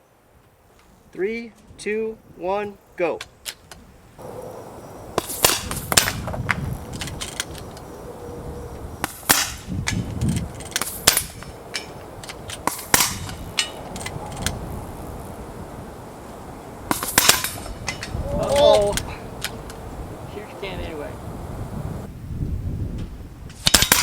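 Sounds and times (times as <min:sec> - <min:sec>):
air rifles firing: 0:05.2 - 0:06.3, 0:09.0 - 0:14.6, 0:16.9 - 0:18.0, 0:23.6 - 0:24.0
rifle bolts clicking: 0:06.9 - 0:07.9, 0:09.0 - 0:14.6, 0:17.2 - 0:19.8.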